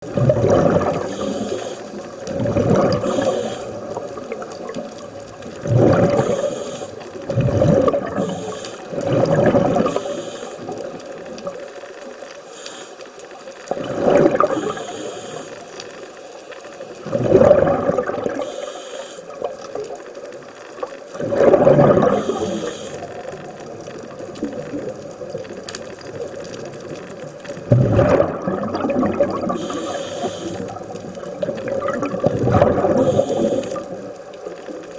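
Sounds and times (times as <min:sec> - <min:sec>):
exhaled bubbles gurgling: 0:00.0 - 0:34.9
regulator inhalation hiss: 0:01.0 - 0:02.2, 0:03.0 - 0:04.0, 0:06.1 - 0:07.1, 0:08.2 - 0:08.9, 0:09.7 - 0:10.8, 0:12.4 - 0:13.2, 0:14.5 - 0:15.7, 0:18.4 - 0:19.4, 0:22.1 - 0:23.2, 0:29.6 - 0:30.8, 0:32.9 - 0:34.0.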